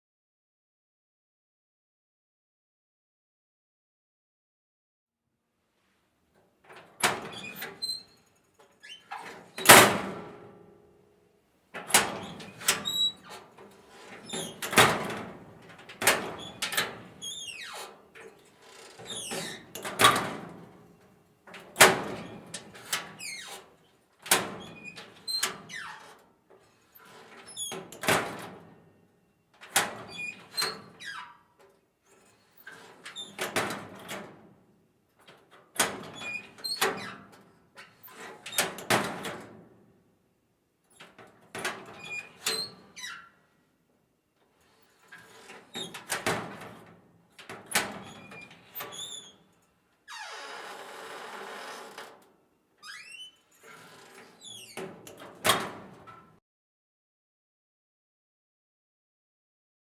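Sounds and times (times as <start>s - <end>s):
metal locker door shutting: 9.6s - 10.4s, 14.2s - 17.2s
hinge squeaks: 50.1s - 52.2s, 52.8s - 54.8s.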